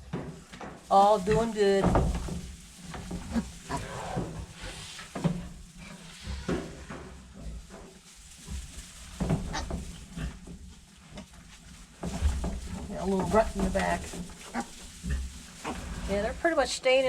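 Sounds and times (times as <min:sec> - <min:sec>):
pigs grunting: 0:02.9 - 0:06.6, 0:09.5 - 0:10.4, 0:12.5 - 0:16.4.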